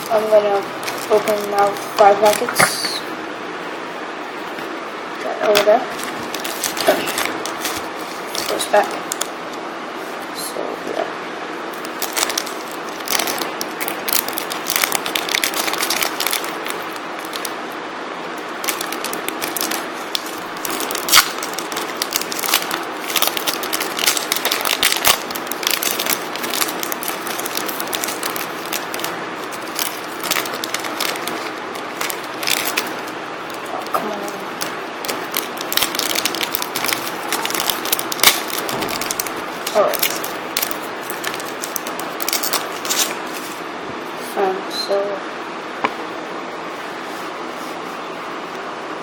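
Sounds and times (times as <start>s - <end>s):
foil wrapper tearing and crinkling: 0.0s - 2.6s, 5.5s - 9.3s, 11.7s - 17.6s, 18.4s - 43.6s.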